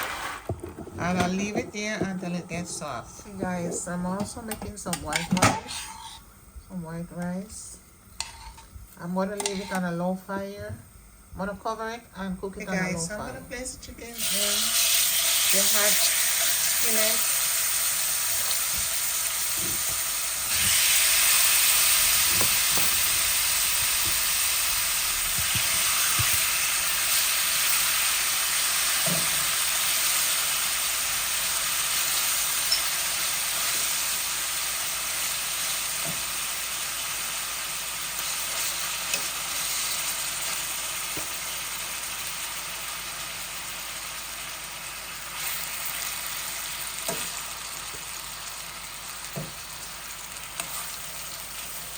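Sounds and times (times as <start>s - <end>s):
chicken sizzling in a skillet: 14.1s - 51.9s.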